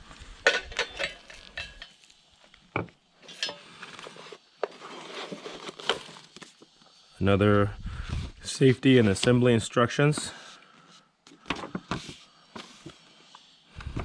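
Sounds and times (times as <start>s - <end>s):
metal fittings clinking: 0.4s - 2.0s, 3.2s - 3.6s.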